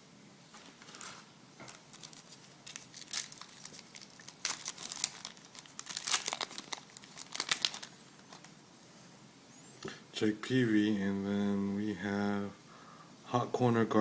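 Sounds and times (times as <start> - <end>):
foil wrapper crinkling: 0.8 - 8.5.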